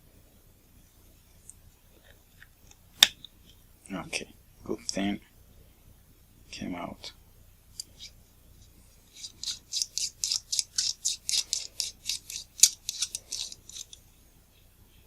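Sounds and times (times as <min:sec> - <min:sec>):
scraping strokes on camera lens: 0:07.8 - 0:14.0.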